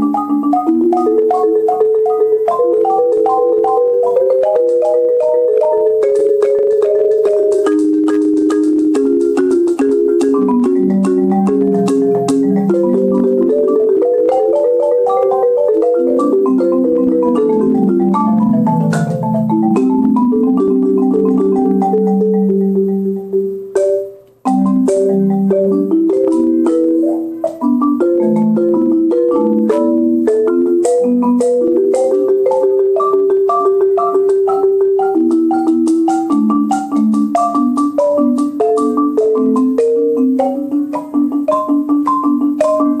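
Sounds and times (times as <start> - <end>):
marimba played with mallets: 0.0 - 43.0.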